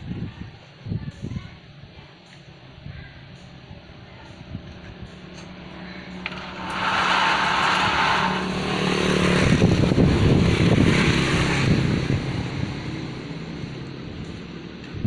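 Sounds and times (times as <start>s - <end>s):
rough mechanical noise: 3.3s - 15.0s.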